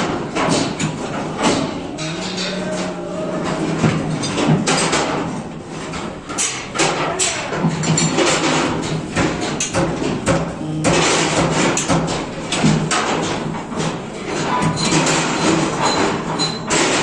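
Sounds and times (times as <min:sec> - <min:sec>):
hammer knocking on metal: 0:08.2 - 0:12.9.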